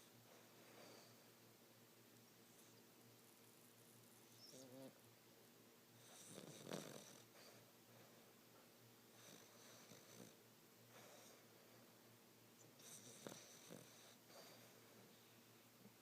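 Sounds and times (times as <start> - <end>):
quiet snoring: 4.3 - 5.0, 6.0 - 7.6, 9.1 - 11.5, 12.8 - 14.8.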